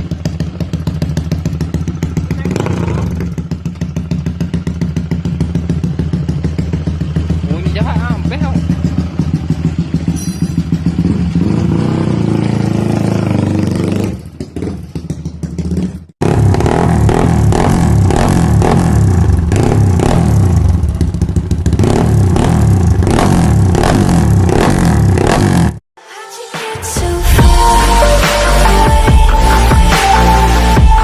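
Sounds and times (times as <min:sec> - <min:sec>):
motorcycle engine running: 0:00.0 - 0:25.8.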